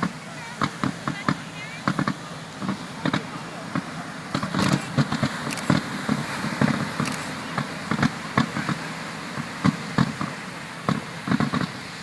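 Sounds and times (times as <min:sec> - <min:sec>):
fireworks bangs and pops: 0:00.0 - 0:11.8.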